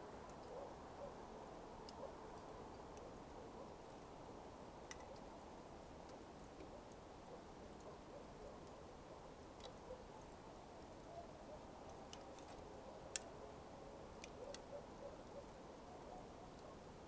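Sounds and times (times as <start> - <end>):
coals crackling: 0.0 - 8.0, 11.7 - 17.0.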